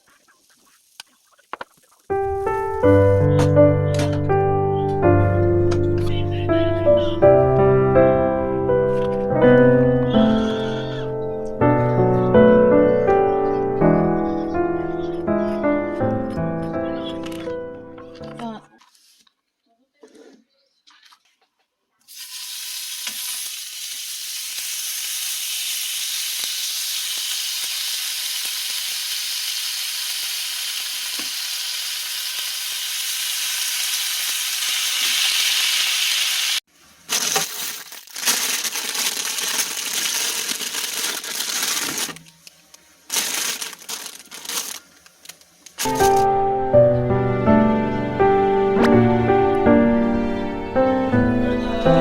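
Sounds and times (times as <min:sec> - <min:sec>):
food sizzling in a pan: 0:00.0 - 0:02.4, 0:22.1 - 0:37.3.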